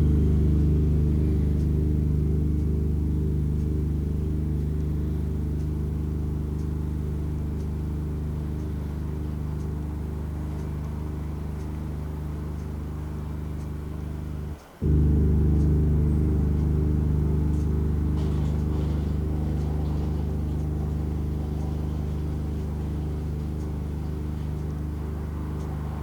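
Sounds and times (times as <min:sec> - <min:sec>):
steady low hum: 0:00.0 - 0:26.0
sliding synthesized tones: 0:14.8 - 0:24.3.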